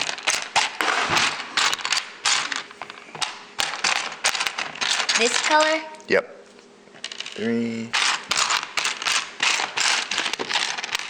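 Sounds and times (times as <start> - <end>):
plastic pieces clicking and clattering: 0.0 - 5.8, 7.0 - 11.0.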